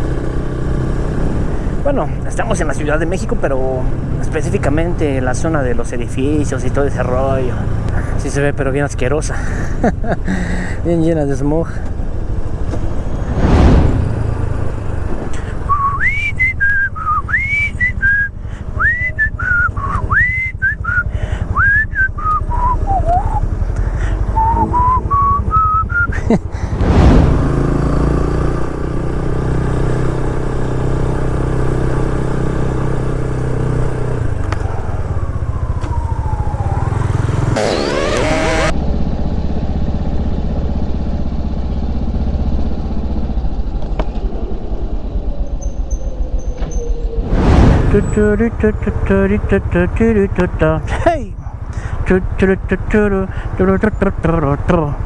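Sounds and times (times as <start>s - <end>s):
motorcycle engine running: 0.0s - 8.8s, 16.8s - 46.3s, 48.3s - 55.0s
wind rumble: 11.9s - 17.2s, 24.3s - 28.8s, 43.3s - 50.2s
loud whoosh: 12.9s - 15.8s, 26.6s - 28.8s, 46.1s - 49.8s
person whistling a tune: 15.7s - 23.4s, 24.3s - 26.3s.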